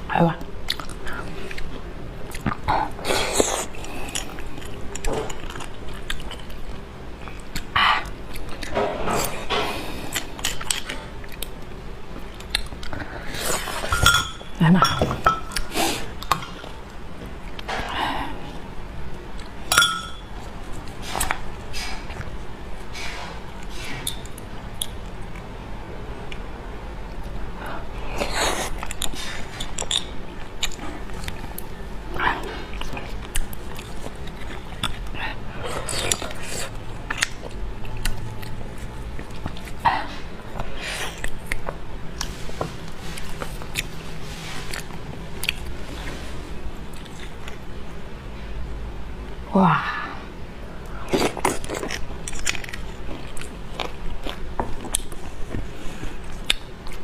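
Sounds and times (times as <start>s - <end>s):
wet chewing and biting: 0.6s - 13.9s, 32.5s - 39.8s, 44.6s - 46.2s, 51.1s - 57.0s
eating noises: 0.6s - 14.0s, 28.0s - 47.9s
tableware clinking: 13.8s - 15.6s, 19.7s - 20.3s.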